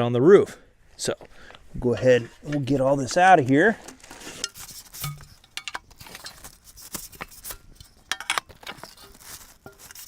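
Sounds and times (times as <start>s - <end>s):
packaging rustling: 4.0s - 7.6s, 8.5s - 10.0s
metal parts clinking and knocking: 4.4s - 6.5s.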